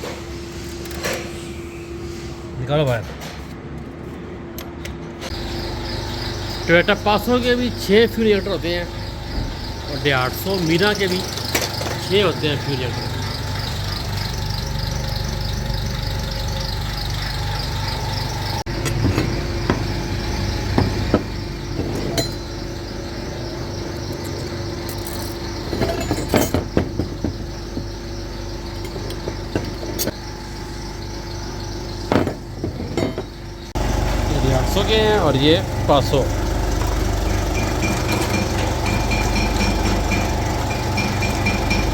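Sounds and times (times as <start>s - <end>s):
steady mechanical hum: 0.0s - 41.9s
metal tools clinking and knocking: 10.5s - 14.2s, 21.8s - 22.6s, 23.9s - 27.8s, 32.1s - 33.4s.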